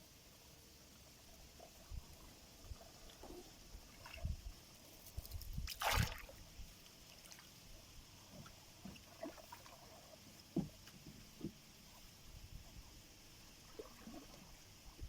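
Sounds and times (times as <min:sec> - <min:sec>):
water sloshing around boat: 0:00.9 - 0:15.0
soft knocks: 0:10.5 - 0:11.6.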